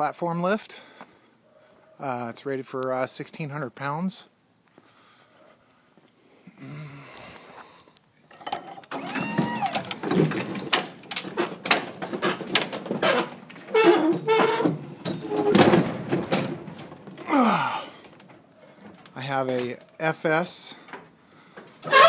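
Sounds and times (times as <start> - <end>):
metal clanks and knocks: 8.3 - 9.0, 9.8 - 17.3.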